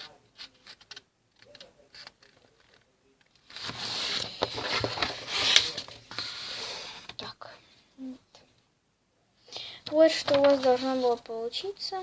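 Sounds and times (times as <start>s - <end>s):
paper rustling and crackling: 0.0s - 6.4s, 10.0s - 11.2s.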